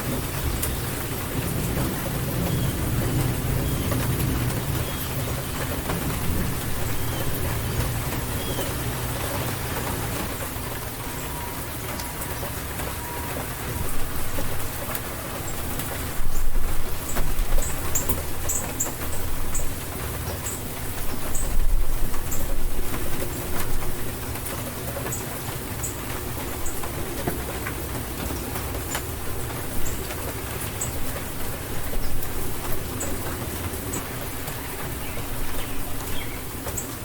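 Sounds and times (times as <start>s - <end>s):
thunder rumble: 0.0s - 19.5s
steady rainfall: 0.0s - 37.0s.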